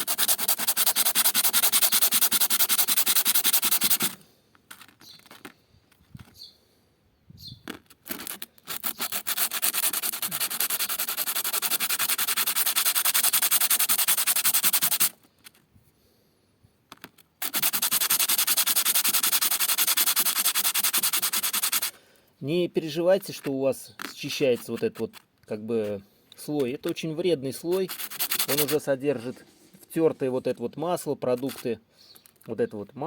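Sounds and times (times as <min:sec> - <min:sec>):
brake pad rubbed on sandpaper: 0:00.0 - 0:05.5, 0:07.7 - 0:15.6, 0:17.4 - 0:21.9, 0:24.2 - 0:25.2, 0:27.6 - 0:30.0, 0:31.4 - 0:31.8.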